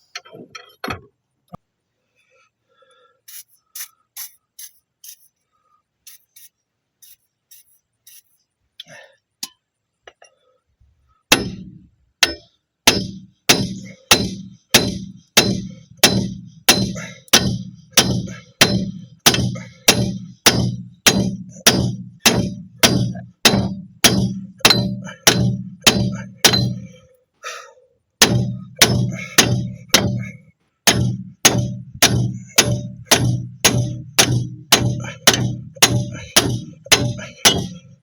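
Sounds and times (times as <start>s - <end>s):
hammer striking metal: 11.3s - 27.0s, 28.2s - 38.0s.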